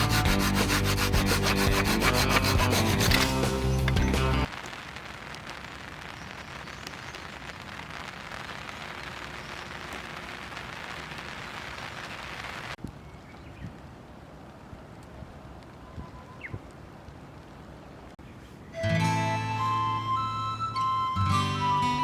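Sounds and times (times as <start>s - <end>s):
individual raindrops: 3.1s - 18.8s
rain falling on a surface: 4.5s - 18.2s.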